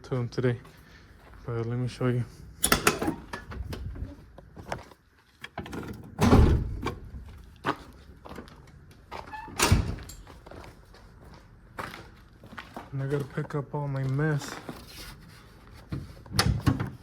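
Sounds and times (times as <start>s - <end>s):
heavy thunks: 6.2s - 7.4s.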